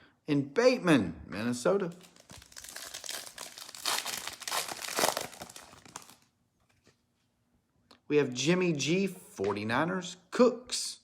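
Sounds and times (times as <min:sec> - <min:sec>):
plastic wrapper tearing and crinkling: 0:01.9 - 0:06.3.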